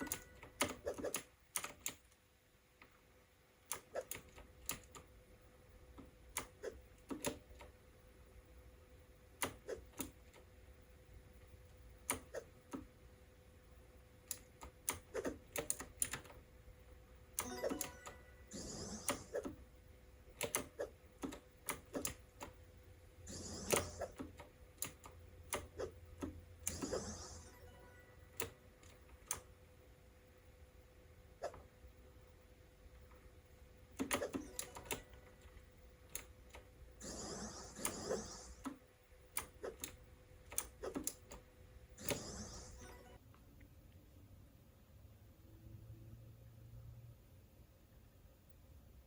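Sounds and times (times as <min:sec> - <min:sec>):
mechanical keyboard typing: 0:00.0 - 0:02.0, 0:14.3 - 0:16.4, 0:20.4 - 0:22.6, 0:34.0 - 0:35.2.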